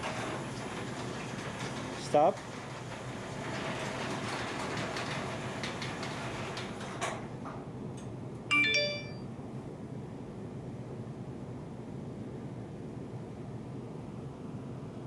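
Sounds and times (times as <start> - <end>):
garage door opener rattling: 0.0 - 7.6
electronic notification chime: 8.5 - 9.3.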